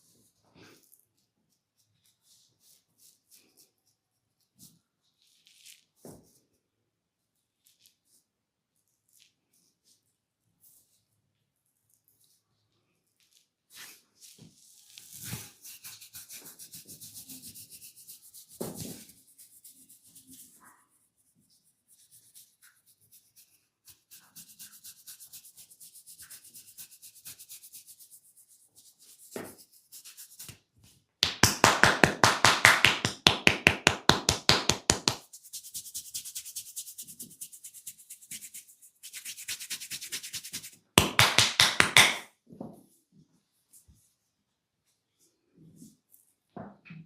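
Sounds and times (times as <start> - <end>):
fingernails scratching scalp and hair: 14.8 - 30.5, 35.2 - 40.8
rapid tapping on head: 31.2 - 35.3, 39.2 - 42.2.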